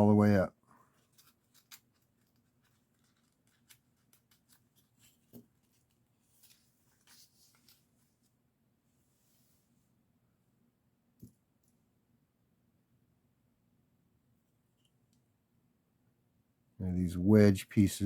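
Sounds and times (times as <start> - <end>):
plastic pieces clicking together: 1.1 - 4.6.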